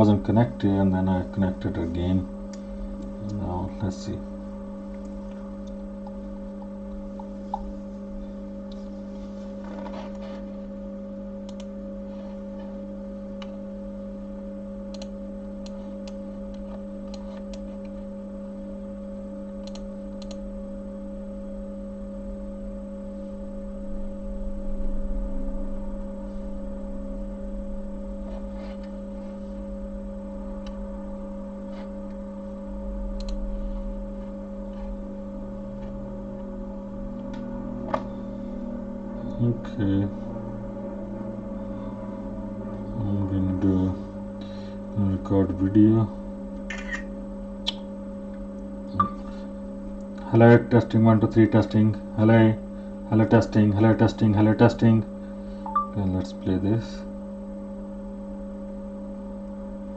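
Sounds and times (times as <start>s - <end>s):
steady electrical hum: 0.0s - 59.9s
low rumble: 22.2s - 45.3s.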